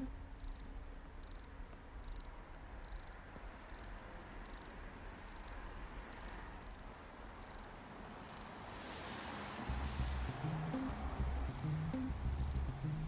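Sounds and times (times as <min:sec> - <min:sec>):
crickets chirping: 0:00.0 - 0:13.0
steady low rumble: 0:09.6 - 0:13.0.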